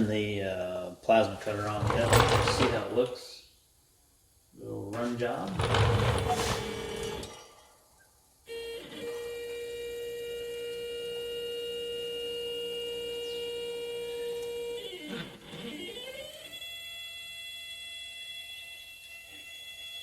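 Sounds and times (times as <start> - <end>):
stepper motors whining: 8.5 - 20.0.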